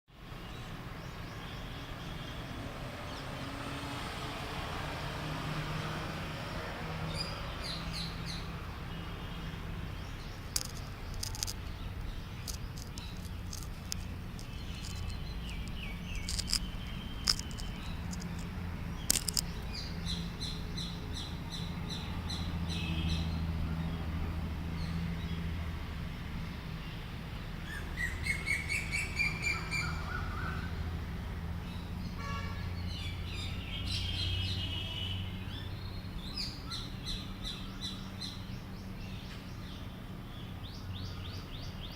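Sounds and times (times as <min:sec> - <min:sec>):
birds chirping: 0:06.4 - 0:25.6, 0:26.6 - 0:30.9, 0:31.6 - 0:41.9.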